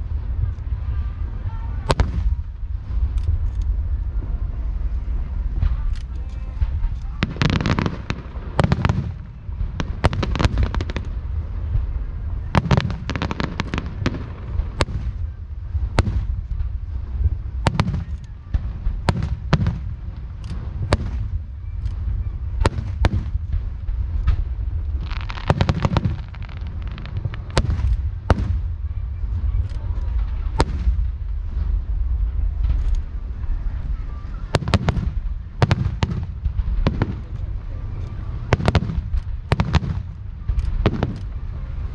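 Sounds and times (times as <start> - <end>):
deep continuous rumble: 0.0 - 41.9
fireworks bangs: 0.0 - 41.9
rapid firework pops: 5.5 - 28.8, 29.5 - 31.9, 34.5 - 41.5.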